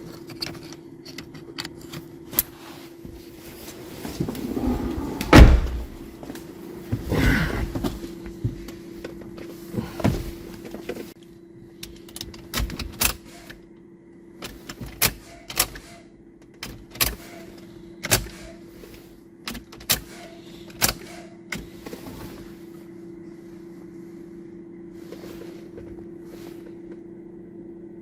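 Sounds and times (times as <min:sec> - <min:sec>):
steady low hum: 0:02.1 - 0:12.6, 0:20.2 - 0:28.0.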